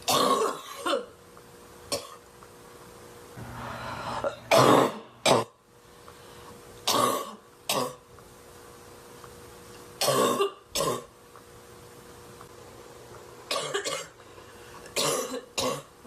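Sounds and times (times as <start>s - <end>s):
woman coughing: 0.1s - 1.2s, 1.9s - 2.2s, 4.2s - 5.6s, 6.9s - 8.0s, 10.0s - 11.1s, 13.5s - 14.2s, 15.0s - 16.0s
rising breath-like sound: 3.4s - 4.5s.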